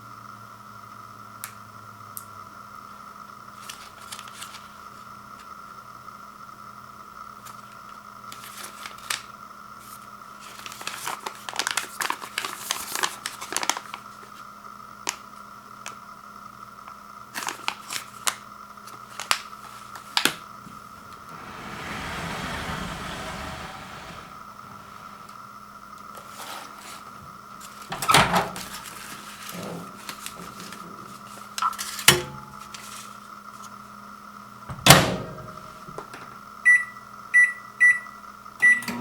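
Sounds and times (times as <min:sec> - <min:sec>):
packaging crinkling: 0:10.5 - 0:14.0, 0:17.4 - 0:20.4.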